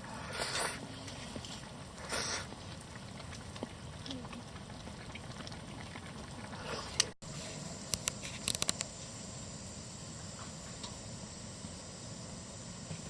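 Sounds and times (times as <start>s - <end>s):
campfire hissing: 0.0s - 4.7s, 6.4s - 13.0s
campfire crackling pops: 7.9s - 9.0s.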